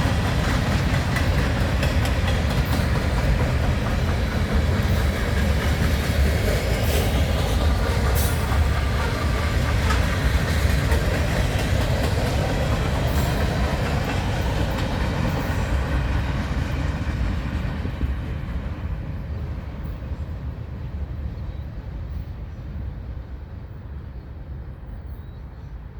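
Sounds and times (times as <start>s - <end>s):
wheels clicking over rail joints: 0.0s - 19.4s
freight train rumbling past: 0.0s - 25.9s.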